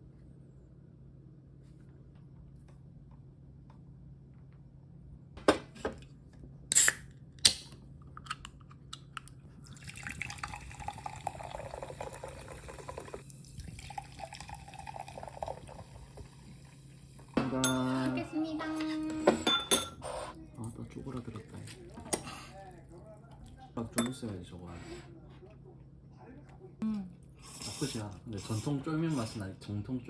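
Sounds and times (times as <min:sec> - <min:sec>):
water running from tap: 0:09.7 - 0:17.4.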